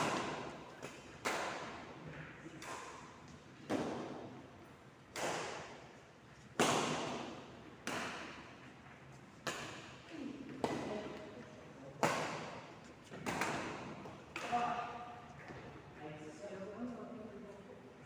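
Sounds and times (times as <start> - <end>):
ball hits with echo: 0.0 - 1.9, 2.5 - 4.4, 5.1 - 5.9, 6.5 - 8.6, 9.4 - 11.3, 11.9 - 15.6.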